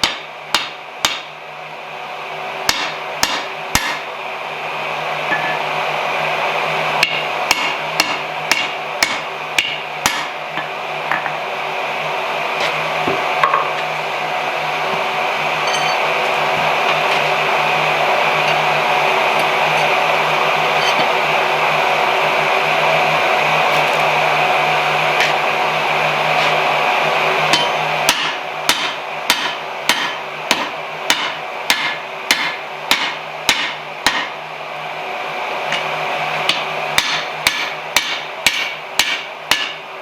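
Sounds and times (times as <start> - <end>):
hammer striking hot metal on anvil: 0.0 - 1.4, 2.7 - 4.1, 5.3 - 5.8, 7.0 - 11.4, 13.1 - 13.8, 15.6 - 16.1, 20.7 - 21.1, 25.2 - 25.4, 27.5 - 34.4, 35.7 - 35.9, 36.5 - 39.8
steady rushing noise with hum: 1.4 - 38.4.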